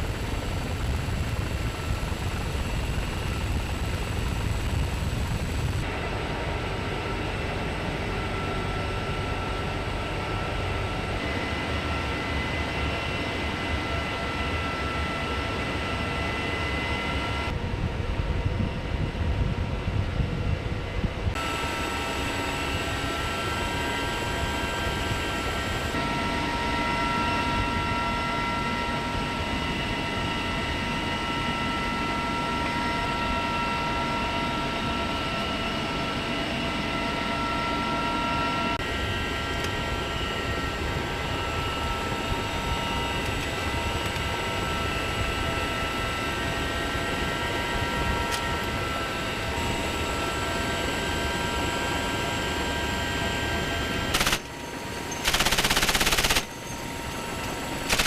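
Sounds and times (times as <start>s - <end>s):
helicopter running: 0.0s - 58.0s
machine-gun fire: 54.1s - 54.5s, 55.2s - 56.5s.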